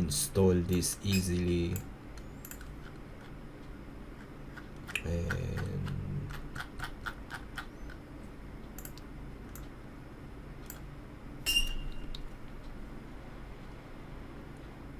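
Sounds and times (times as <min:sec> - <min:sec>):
computer clicks: 0:00.7 - 0:02.7, 0:08.7 - 0:09.8.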